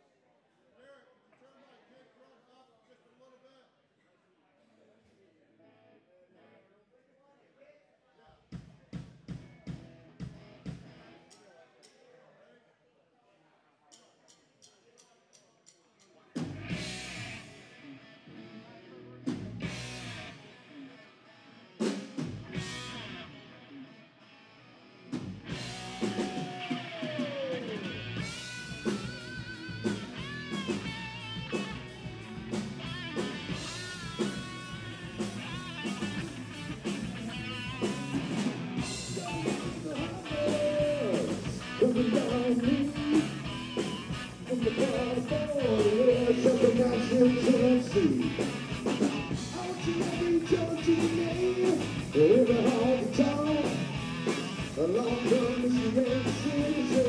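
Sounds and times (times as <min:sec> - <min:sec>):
live rock band playing: 0:16.4 - 0:17.8, 0:19.2 - 0:20.7, 0:21.5 - 0:23.5, 0:24.9 - 0:57.0.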